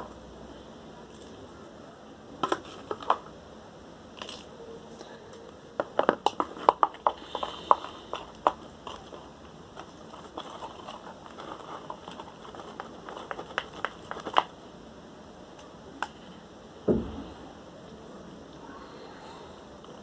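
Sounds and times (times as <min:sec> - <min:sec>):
dull thump: 0:16.8 - 0:17.4.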